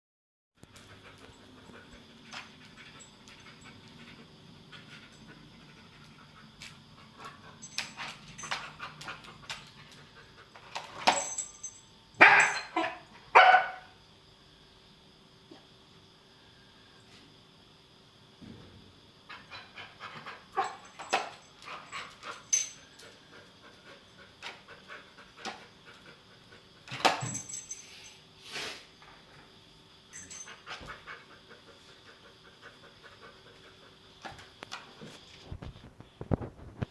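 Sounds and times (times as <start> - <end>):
dog panting: 30.5 - 34.2.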